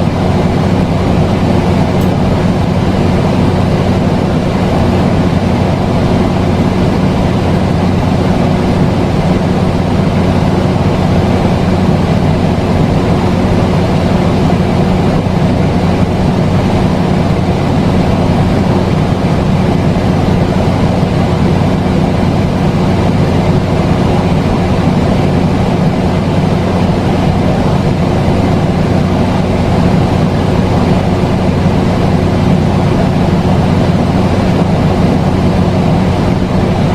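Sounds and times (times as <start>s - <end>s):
constant low hum: 0.0s - 36.9s.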